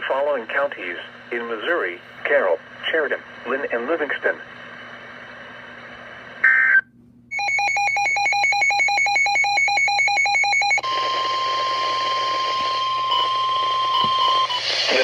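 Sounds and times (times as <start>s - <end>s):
steady warning alarm tone: 7.3s - 15.0s.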